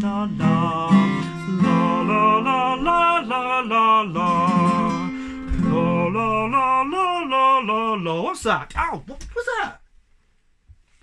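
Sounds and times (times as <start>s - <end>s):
held guitar chords: 0.0s - 8.2s
person singing vocal arpeggios: 0.0s - 8.4s.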